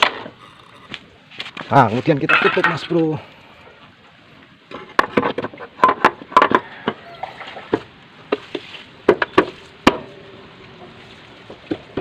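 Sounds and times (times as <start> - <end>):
tools and parts clicking and knocking: 2.2 - 3.0, 4.7 - 7.0.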